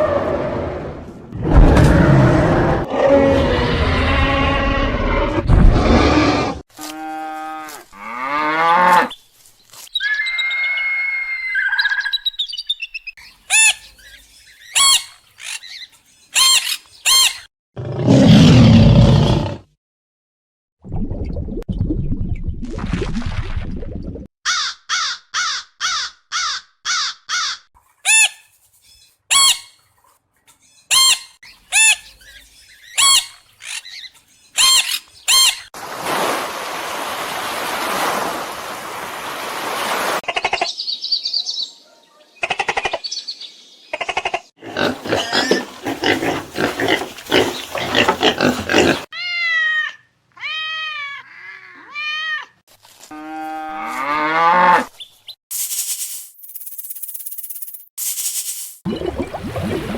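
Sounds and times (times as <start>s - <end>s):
bird chirps: 9.9s - 17.4s
animal calls: 44.6s - 52.0s.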